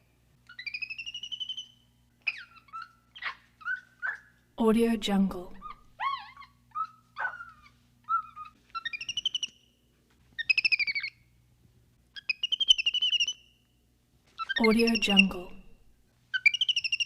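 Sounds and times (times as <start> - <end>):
animal chirps: 0.5 - 4.3, 5.6 - 9.7, 10.4 - 11.3, 12.2 - 13.6, 14.4 - 15.4, 16.3 - 17.0.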